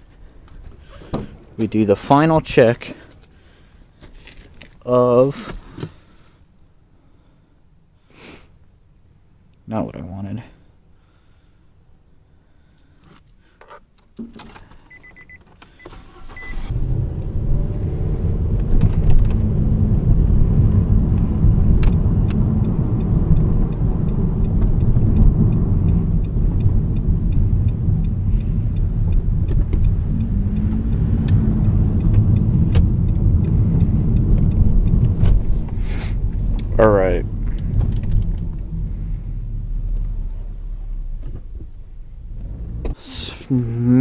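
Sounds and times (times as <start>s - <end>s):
car engine starting and idling: 0.0s - 3.4s, 14.9s - 44.0s
clicks: 23.0s - 38.7s.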